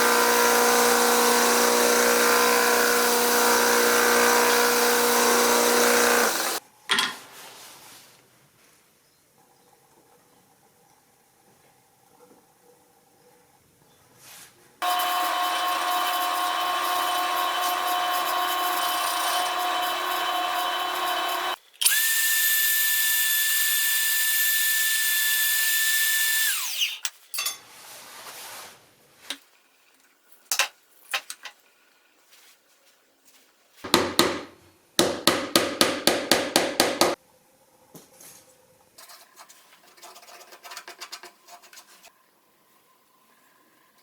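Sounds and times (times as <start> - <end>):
higher-pitched power tool: 0.0 - 6.6, 14.8 - 27.1
power tool running: 0.0 - 6.6, 14.8 - 27.1.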